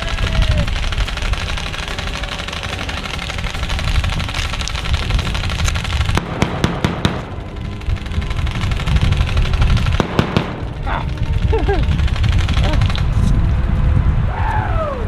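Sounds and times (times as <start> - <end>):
airsoft gun shots: 0.0 - 7.5, 9.8 - 10.7
steady low rumble: 0.0 - 15.0.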